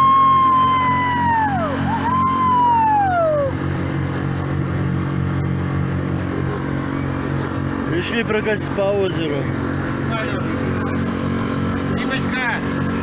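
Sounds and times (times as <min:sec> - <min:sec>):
high tone sliding down: 0:00.0 - 0:03.6.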